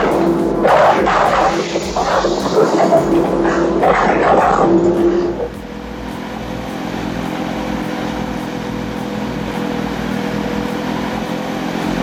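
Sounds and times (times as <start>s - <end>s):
heavy machinery engine running: 0.0s - 12.0s.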